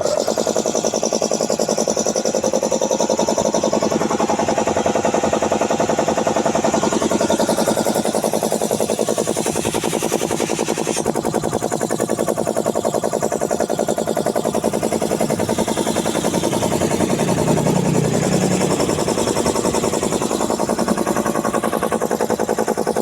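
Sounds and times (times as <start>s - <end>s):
air compressor pump knocking: 0.0s - 23.0s.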